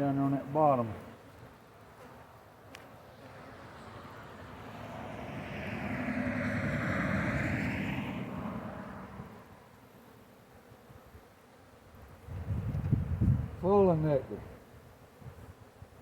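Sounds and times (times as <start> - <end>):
engine passing by: 3.2 - 9.6.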